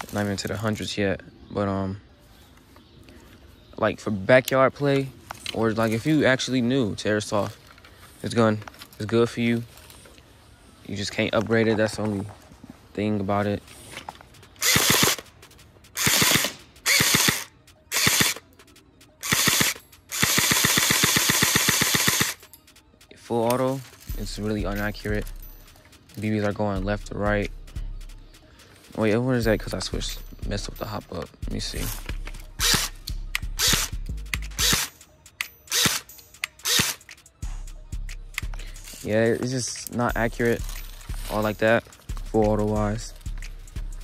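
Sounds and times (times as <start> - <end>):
airsoft gun firing full auto: 14.6 - 15.3, 16.0 - 18.4, 19.2 - 22.4, 33.6 - 33.9, 34.6 - 35.0, 36.6 - 37.0.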